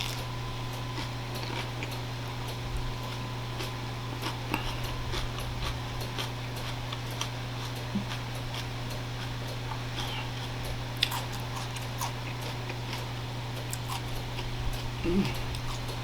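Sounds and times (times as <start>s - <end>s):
vegetable crunching: 0.0s - 0.3s, 11.0s - 13.0s, 13.7s - 16.0s
steady low hum: 0.0s - 16.0s.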